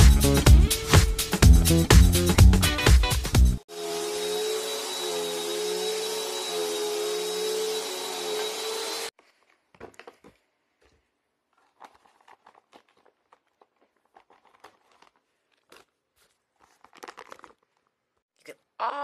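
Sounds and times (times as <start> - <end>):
vacuum cleaner whining: 3.7 - 9.1
vacuum bag crinkling: 9.2 - 18.2.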